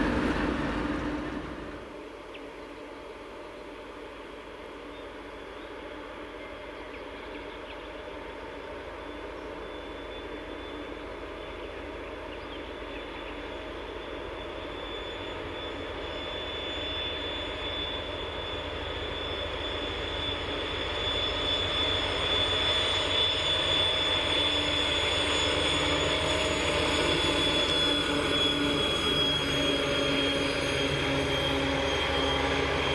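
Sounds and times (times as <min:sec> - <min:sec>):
diesel engine rumble: 0:00.0 - 0:01.9
turbocharger whistling whine: 0:00.0 - 0:01.9, 0:12.6 - 0:32.9.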